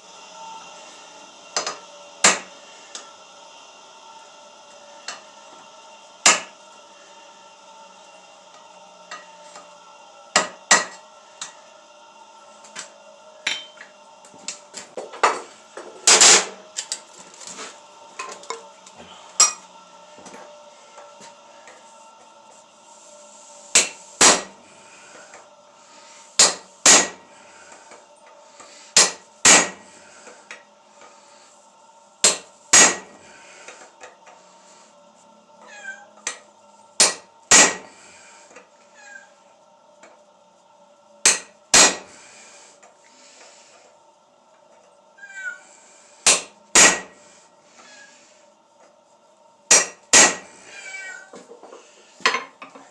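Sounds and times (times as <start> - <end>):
steady hum: 0.0 - 50.7
hammer striking steel on an anvil: 1.6 - 2.5, 6.2 - 6.5, 13.5 - 13.8, 23.7 - 24.5, 26.4 - 27.2, 29.0 - 29.8, 32.2 - 33.1, 37.0 - 37.9, 41.2 - 42.1, 46.2 - 47.2, 49.7 - 50.5.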